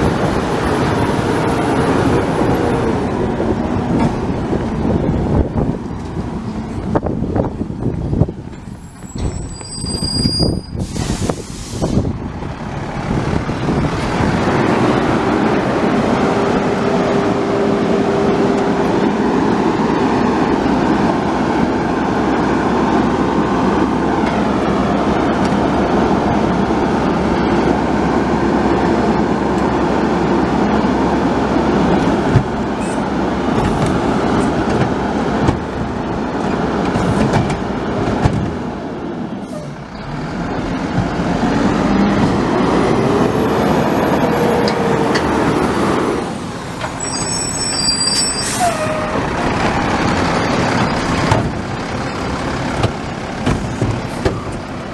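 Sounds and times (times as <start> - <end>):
garbage truck running: 0.0 - 54.9
high-pitched squeal: 8.7 - 12.0, 45.9 - 51.3.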